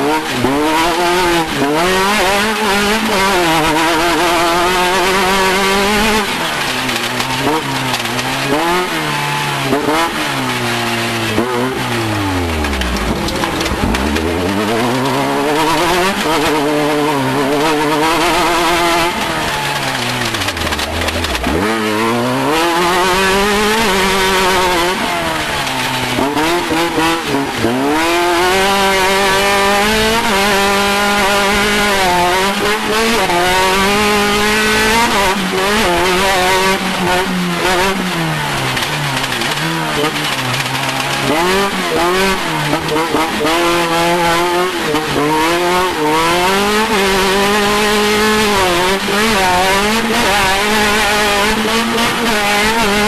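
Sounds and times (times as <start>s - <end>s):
race vehicle engine revving: 0.0s - 53.0s
rough rattle: 18.7s - 21.6s.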